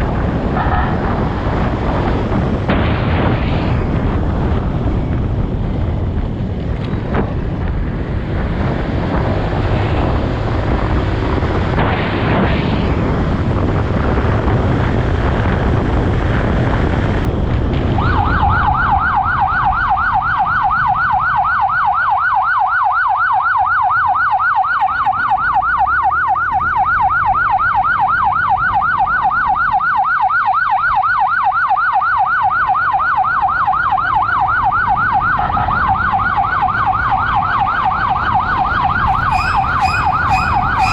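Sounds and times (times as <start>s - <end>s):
wind on microphone: 0.0s - 21.9s, 33.6s - 40.9s
road noise: 0.0s - 40.9s
emergency siren yelping: 17.8s - 40.9s.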